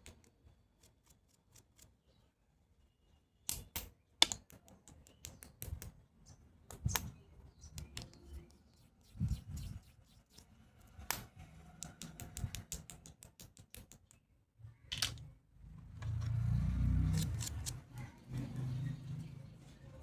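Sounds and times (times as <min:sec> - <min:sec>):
plastic toys clicking and tapping: 0:03.5 - 0:06.0, 0:11.1 - 0:14.2, 0:14.9 - 0:15.3.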